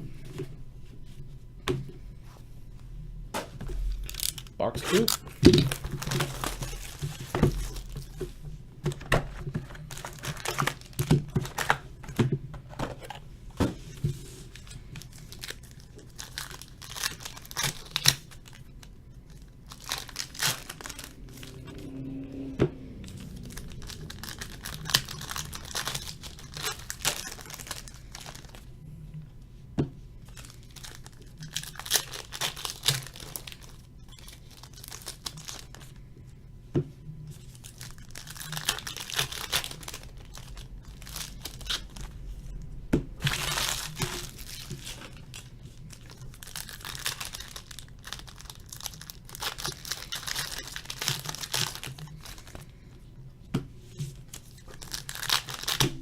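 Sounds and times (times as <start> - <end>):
card pack wrappers tearing: 3.9 - 8.2, 8.9 - 12.1, 14.3 - 22.0, 23.0 - 28.7, 30.3 - 36.0, 37.3 - 42.2, 43.2 - 52.8, 54.3 - 56.0.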